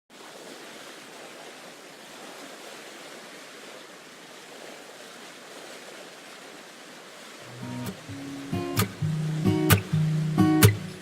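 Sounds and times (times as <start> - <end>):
sea surf rushing: 7.4 - 11.0.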